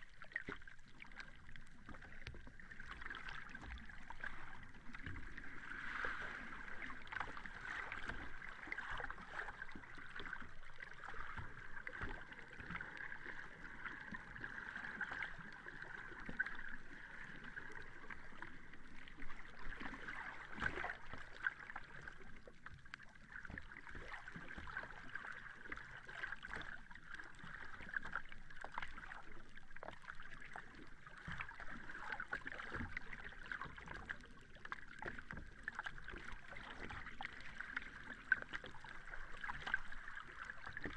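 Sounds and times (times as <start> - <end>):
sea water lapping: 0.0 - 40.9
water splashes: 0.0 - 40.9.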